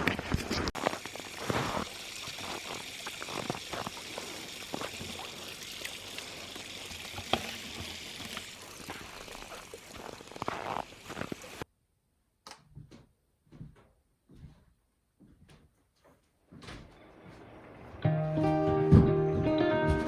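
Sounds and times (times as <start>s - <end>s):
tap water running: 0.0s - 11.7s.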